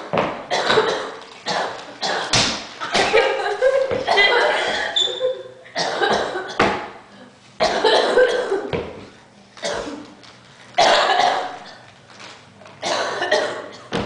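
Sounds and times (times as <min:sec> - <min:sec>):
person coughing: 0:00.5 - 0:03.2, 0:05.7 - 0:06.6, 0:07.6 - 0:08.7, 0:10.8 - 0:11.8, 0:12.8 - 0:14.0.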